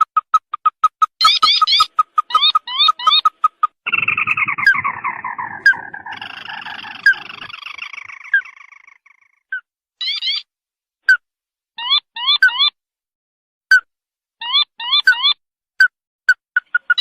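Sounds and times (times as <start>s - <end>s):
bird calls with falling trills: 1.2s - 10.5s.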